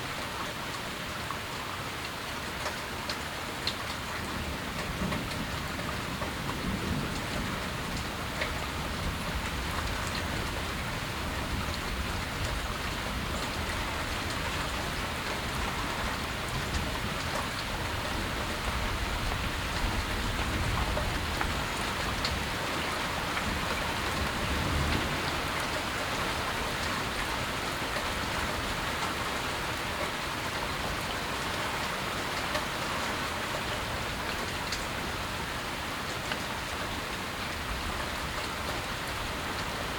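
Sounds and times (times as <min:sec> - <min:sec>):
rain pattering: 0:00.0 - 0:39.9
low thunder rumbles: 0:23.4 - 0:27.4.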